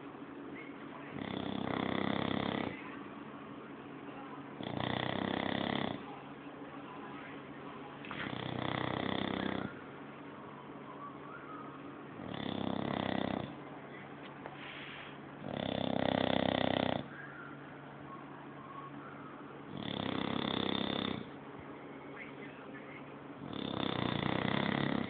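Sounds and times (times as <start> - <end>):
dog snoring: 1.1 - 2.8, 4.6 - 6.1, 8.1 - 9.8, 12.2 - 13.6, 15.4 - 17.1, 19.7 - 21.4, 23.4 - 25.0.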